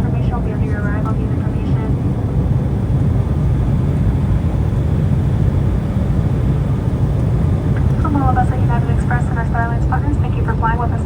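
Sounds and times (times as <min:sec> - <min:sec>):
jet engines idling rumble: 0:00.0 - 0:11.0.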